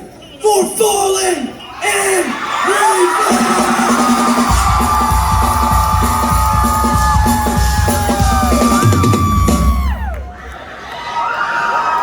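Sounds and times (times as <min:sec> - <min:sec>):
crowd cheering: 0:01.8 - 0:12.0
live rock band playing: 0:03.3 - 0:10.1.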